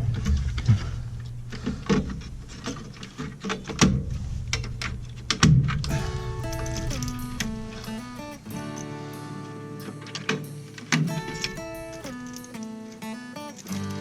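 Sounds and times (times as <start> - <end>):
steady low hum: 0.0 - 13.2
background music: 5.9 - 14.0.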